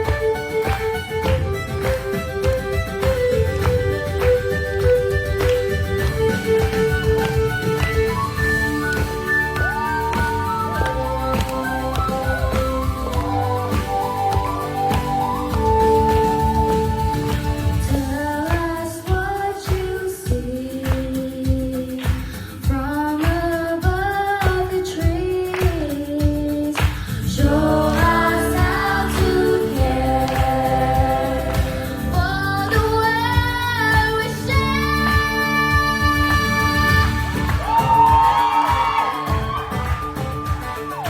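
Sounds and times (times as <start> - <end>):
steady beat: 0.0 - 25.8, 27.3 - 34.7, 35.3 - 41.0
students singing: 27.3 - 33.2.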